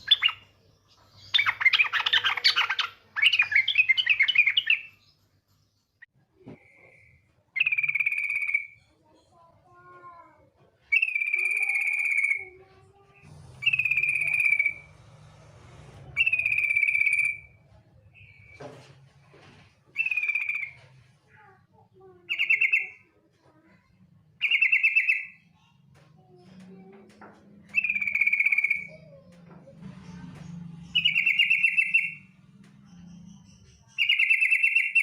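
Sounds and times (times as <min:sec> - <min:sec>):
bird trilling call: 0:31.0 - 0:32.2.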